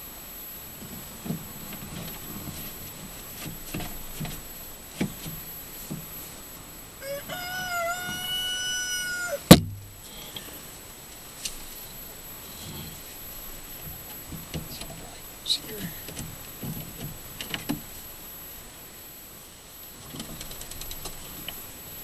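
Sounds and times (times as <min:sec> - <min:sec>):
rooster crowing: 0:07.0 - 0:09.5
sharp loud knock: 0:09.5 - 0:09.9.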